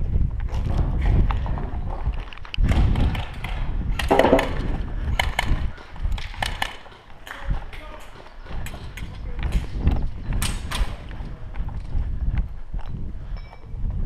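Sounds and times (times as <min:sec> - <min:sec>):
sharp knocks and clicks: 0:04.0 - 0:04.8
footsteps: 0:04.1 - 0:04.8.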